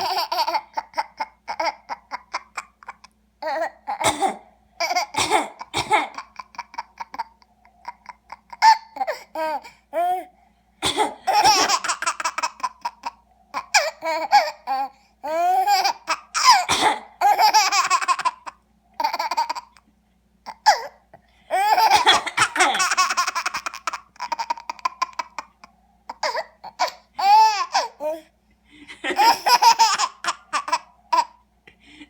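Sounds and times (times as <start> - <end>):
baby laughing: 0.0 - 4.0, 4.8 - 10.2, 10.9 - 19.8, 20.5 - 28.3, 29.0 - 31.4
person coughing: 4.0 - 4.5, 5.1 - 6.2, 10.8 - 11.8, 16.4 - 17.2, 21.7 - 23.0.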